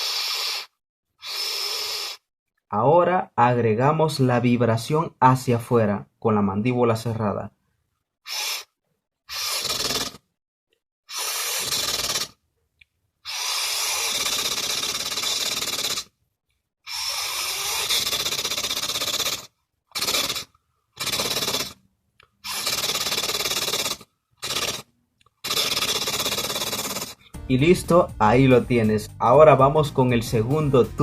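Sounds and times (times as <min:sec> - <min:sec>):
beatboxed machine-gun rattle: 0:09.3 - 0:10.2, 0:11.1 - 0:12.4, 0:13.3 - 0:16.1, 0:16.9 - 0:21.8, 0:22.4 - 0:27.3.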